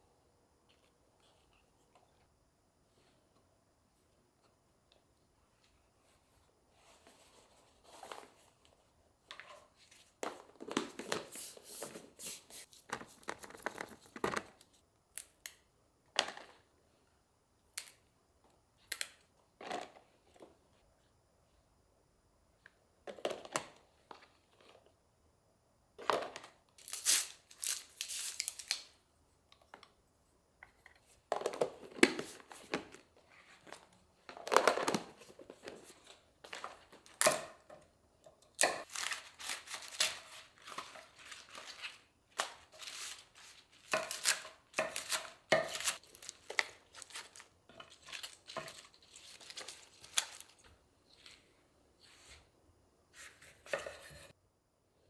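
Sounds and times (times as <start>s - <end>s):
packaging rustling and tearing: 38.8s - 50.6s.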